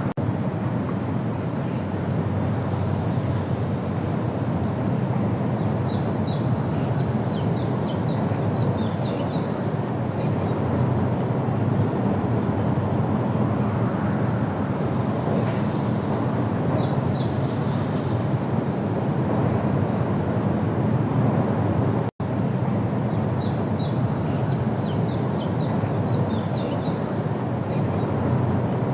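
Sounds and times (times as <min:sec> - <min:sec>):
low outdoor rumble: 0:00.0 - 0:28.9
small bird chirping: 0:05.8 - 0:09.6, 0:23.3 - 0:28.1.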